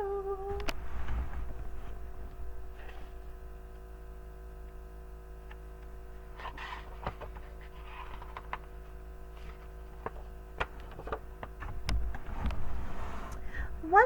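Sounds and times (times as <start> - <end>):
faint steady hum: 0.0 - 14.0
book pages turning: 6.3 - 11.7.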